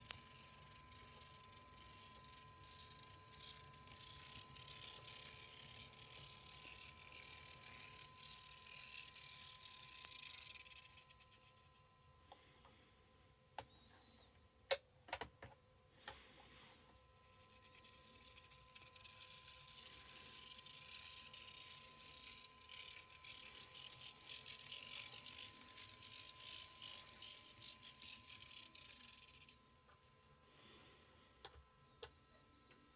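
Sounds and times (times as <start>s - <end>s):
model train motor running: 0.0s - 12.0s, 17.2s - 29.6s.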